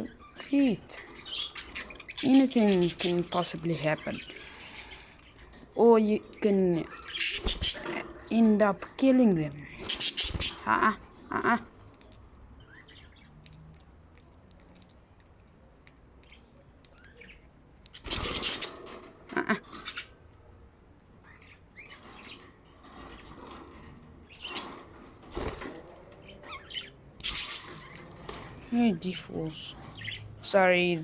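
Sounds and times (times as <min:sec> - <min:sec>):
budgies chirping: 0:00.0 - 0:11.7, 0:12.6 - 0:13.5, 0:16.2 - 0:20.2, 0:21.2 - 0:31.0
wings flapping: 0:07.3 - 0:07.8, 0:09.8 - 0:10.7, 0:25.2 - 0:25.9.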